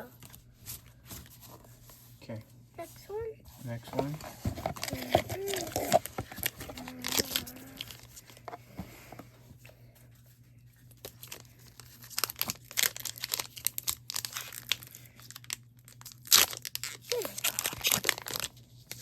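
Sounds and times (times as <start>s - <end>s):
packaging wrapper crackling: 4.7s - 8.2s, 11.1s - 19.0s.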